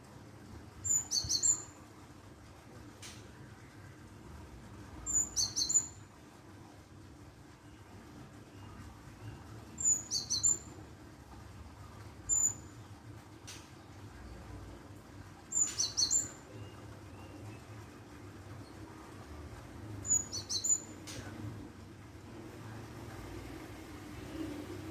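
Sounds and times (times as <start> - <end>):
bird chirping: 0.8 - 1.8, 5.0 - 6.0, 8.5 - 10.7, 12.3 - 12.7, 15.5 - 17.7, 20.0 - 21.0.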